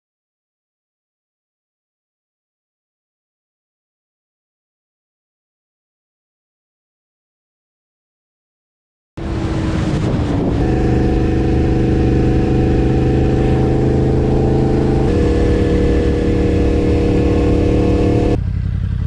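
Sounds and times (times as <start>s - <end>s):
wind rush: 9.2s - 18.4s
motorcycle engine at high revs: 9.2s - 19.0s.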